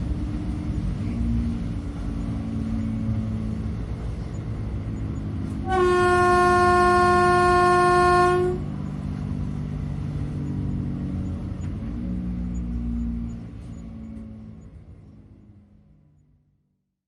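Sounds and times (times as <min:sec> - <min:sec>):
train running rumble: 0:00.0 - 0:16.4
train horn blast: 0:05.6 - 0:08.7.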